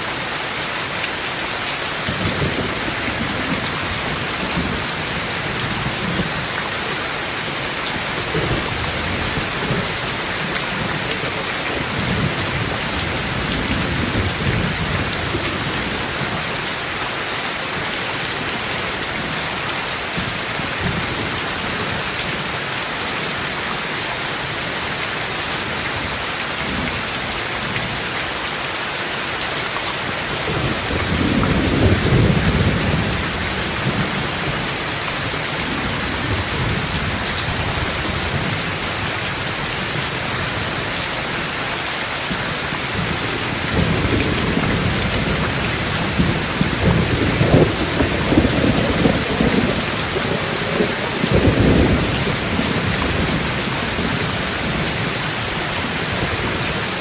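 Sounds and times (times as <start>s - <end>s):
heavy rain: 0.0s - 57.0s
distant thunder rolling: 43.0s - 55.1s.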